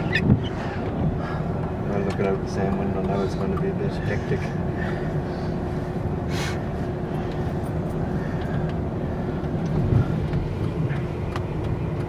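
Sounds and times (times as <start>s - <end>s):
faint constant hum: 0.0s - 12.0s
road and engine rumble: 0.0s - 12.0s.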